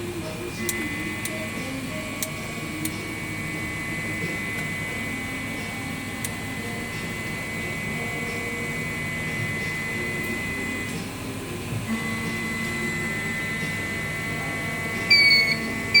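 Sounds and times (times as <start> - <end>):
low mechanical hum: 0.0 - 16.0
high-pitched electronic whine: 11.9 - 16.0.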